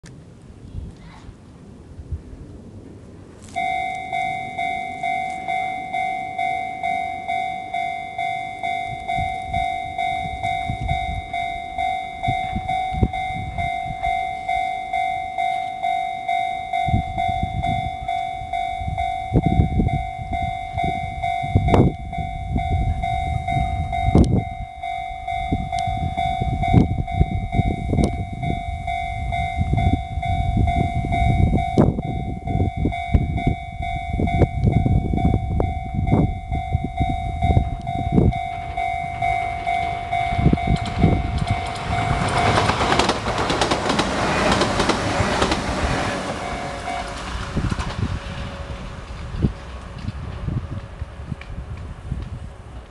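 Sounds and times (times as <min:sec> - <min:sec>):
electric train rumbling: 0:00.1 - 0:52.9
level crossing warning bell: 0:03.4 - 0:50.6
train wheels clacking: 0:37.4 - 0:50.4.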